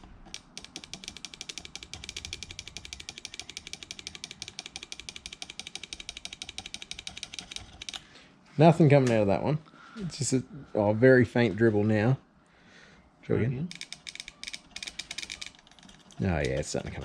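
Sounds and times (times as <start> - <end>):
fuel injector clicking rapidly: 0.0 - 8.0, 13.7 - 16.9.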